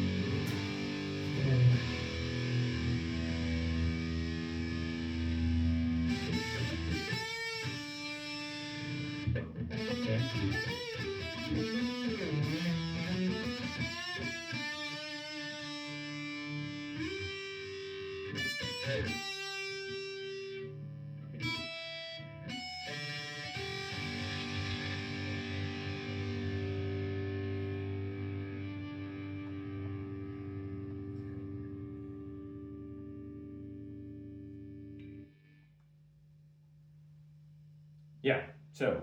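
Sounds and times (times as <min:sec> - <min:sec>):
electric guitar lead line: 0:00.0 - 0:35.6.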